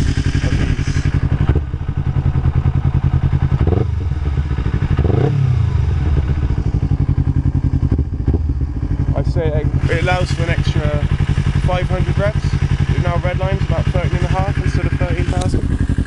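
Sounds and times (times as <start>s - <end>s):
motorcycle engine idling: 0.0s - 16.0s.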